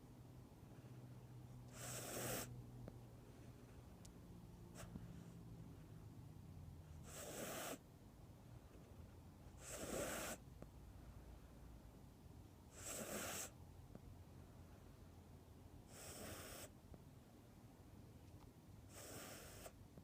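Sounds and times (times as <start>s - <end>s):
cat snoring: 1.7s - 2.6s, 7.0s - 7.8s, 9.5s - 10.4s, 12.7s - 13.6s, 15.8s - 16.8s, 18.9s - 19.8s.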